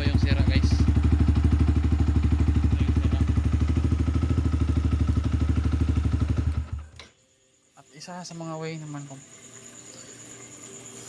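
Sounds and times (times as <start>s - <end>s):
motorcycle engine idling: 0.0s - 7.0s.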